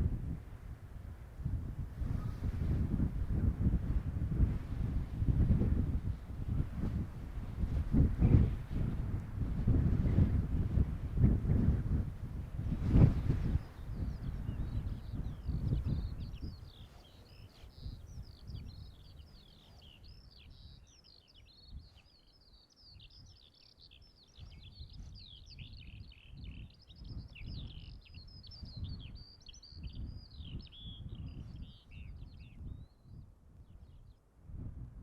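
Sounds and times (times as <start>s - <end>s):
wind rumbling on microphone: 0.0s - 35.0s
small birds chirping and trilling: 12.7s - 34.2s.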